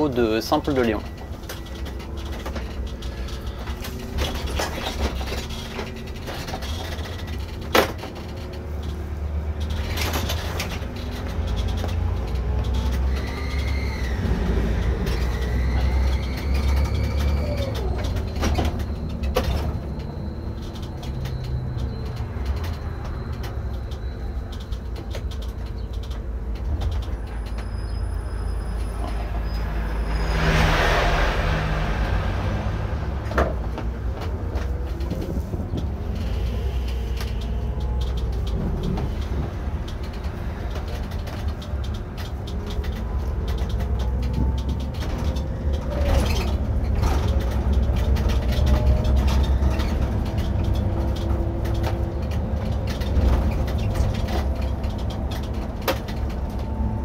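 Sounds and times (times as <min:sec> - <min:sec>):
coach engine rumble: 0:00.0 - 0:57.0.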